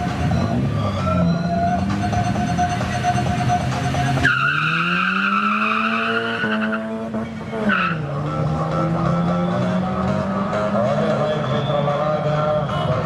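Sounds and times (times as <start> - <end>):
race car engine accelerating: 0.0 - 13.0
tyres squealing: 0.3 - 6.8.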